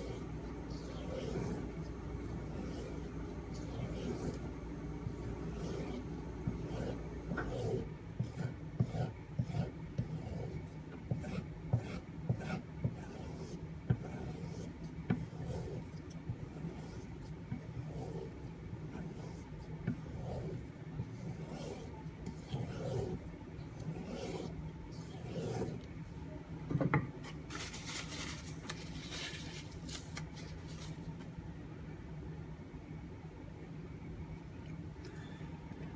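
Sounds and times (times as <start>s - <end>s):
knife rubbing along strop: 0.0s - 10.6s, 21.2s - 25.8s.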